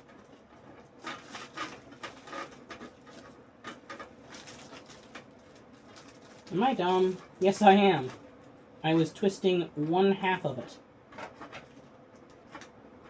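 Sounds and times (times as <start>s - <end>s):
wire twist tie crinkling: 0.0s - 8.5s.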